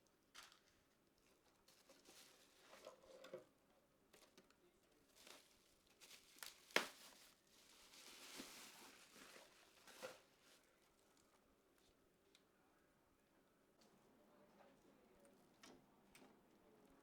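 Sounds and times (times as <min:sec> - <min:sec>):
rustling: 0:05.1 - 0:11.3.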